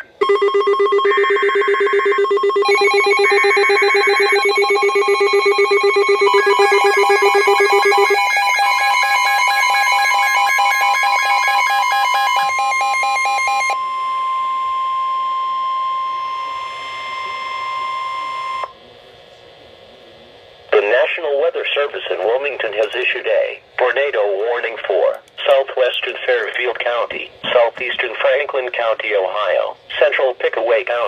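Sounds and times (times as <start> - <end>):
steady alert tone: 0.2 - 13.7
fast-pulsing electronic alarm: 0.2 - 18.7.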